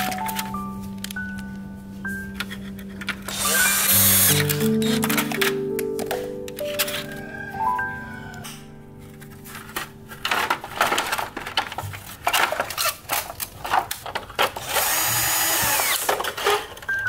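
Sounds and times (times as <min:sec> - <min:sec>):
tools clicking and scraping: 0:02.4 - 0:07.1, 0:08.4 - 0:17.0
small power drill whining: 0:03.3 - 0:05.0, 0:14.6 - 0:16.1.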